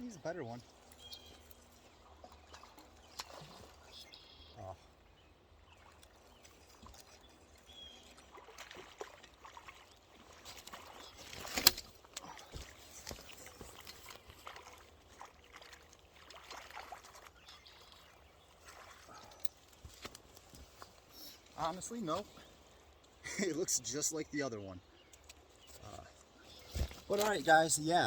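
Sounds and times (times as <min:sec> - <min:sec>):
water splashing and sloshing: 0:00.0 - 0:28.0.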